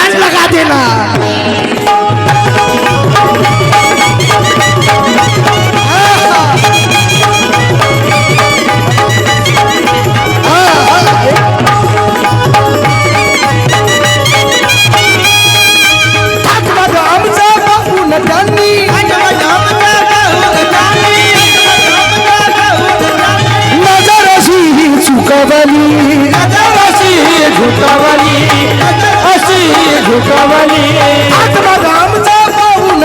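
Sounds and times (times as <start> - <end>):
band melody bending in pitch: 0.0 - 32.6
tabla rhythm: 0.0 - 33.0.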